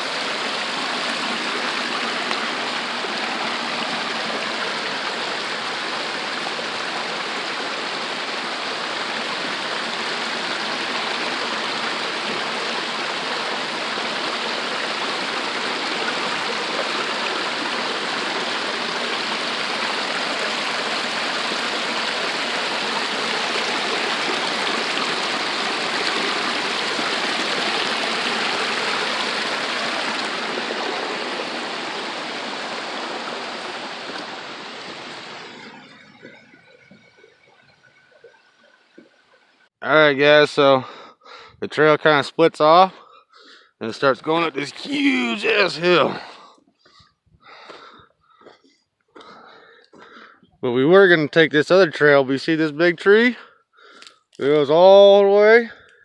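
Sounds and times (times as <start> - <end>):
waterfall and stream rushing: 0.0 - 36.8, 43.9 - 46.3.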